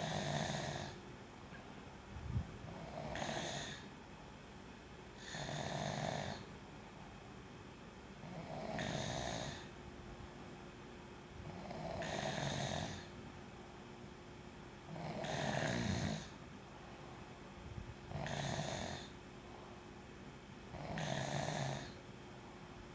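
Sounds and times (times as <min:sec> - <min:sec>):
person snoring: 0:00.0 - 0:01.0, 0:02.7 - 0:03.9, 0:05.2 - 0:06.4, 0:08.3 - 0:09.7, 0:11.4 - 0:13.1, 0:14.9 - 0:16.3, 0:18.1 - 0:19.1, 0:20.8 - 0:22.0.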